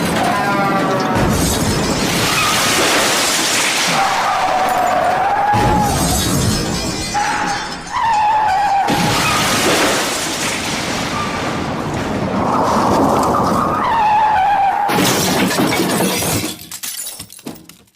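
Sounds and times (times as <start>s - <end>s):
glass shattering: 1.2s - 11.7s, 14.9s - 17.9s
car crash crunching: 1.2s - 17.6s.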